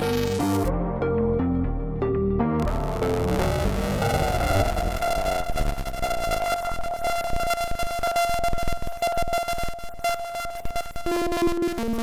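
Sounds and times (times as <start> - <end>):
glitchy stutter of rapid clicks: 2.6 - 9.7
gritty buzzing synthesizer note: 2.6 - 11.1.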